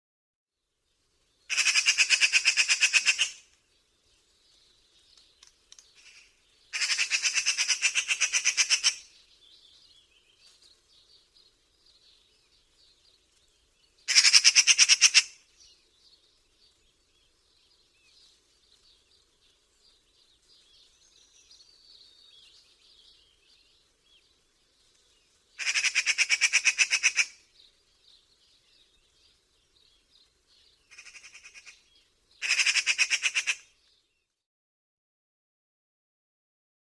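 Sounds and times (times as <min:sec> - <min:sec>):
soft bird calls: 0:01.3 - 0:34.4
magpie chattering: 0:01.5 - 0:03.4, 0:06.0 - 0:09.1, 0:14.1 - 0:15.3, 0:25.6 - 0:27.4, 0:30.9 - 0:31.8, 0:32.4 - 0:33.6.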